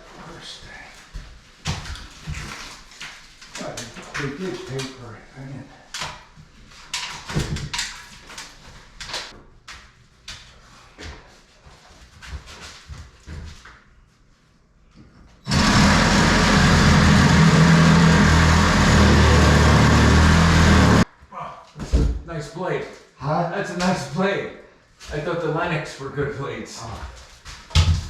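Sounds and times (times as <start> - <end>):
power saw cutting: 15.5 - 21.1.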